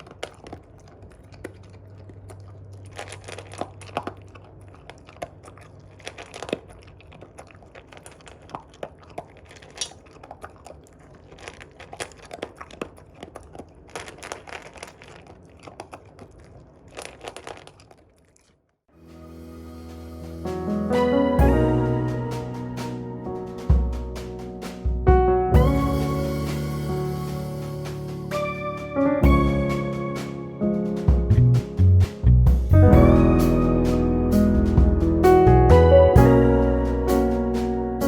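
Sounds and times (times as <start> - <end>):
dog crunching dry kibble: 0.0 - 18.7
music: 19.0 - 38.0.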